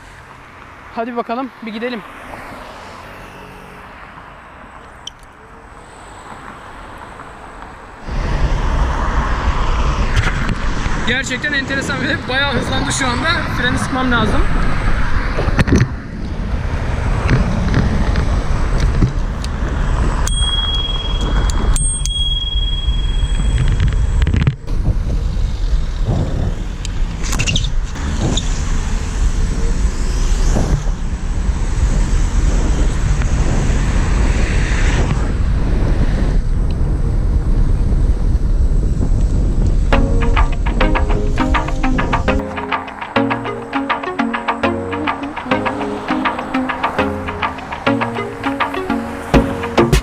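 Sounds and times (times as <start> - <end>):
traffic passing: 0.0 - 21.9, 42.3 - 50.0.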